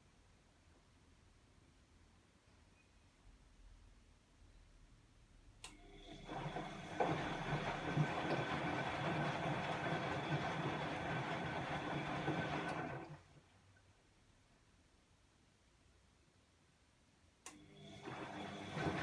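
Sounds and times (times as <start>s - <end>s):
washing machine rumbling hum: 5.8s - 13.5s, 17.6s - 19.0s.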